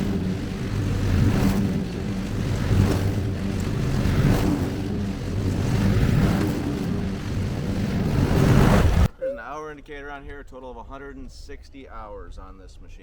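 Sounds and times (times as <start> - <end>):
riding mower engine running: 0.0 - 9.1.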